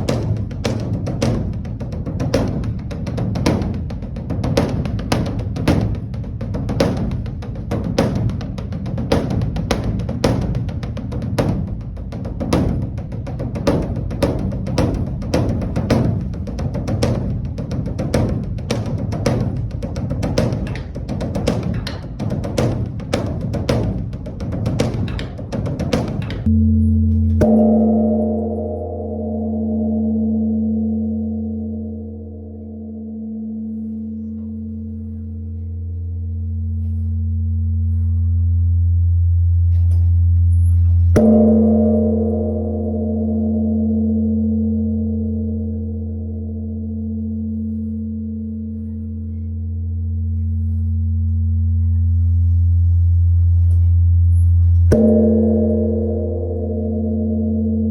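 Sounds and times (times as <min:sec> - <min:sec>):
temple bell struck: 0:26.2 - 0:38.1, 0:40.6 - 0:51.9, 0:54.9 - 0:57.9
deep bell ringing hum: 0:26.4 - 0:57.9.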